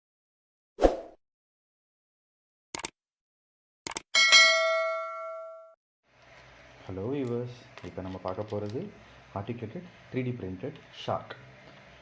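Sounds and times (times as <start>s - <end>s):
quick clicks: 2.8s - 3.0s, 3.8s - 4.1s
bright bell-like chime: 4.2s - 5.8s.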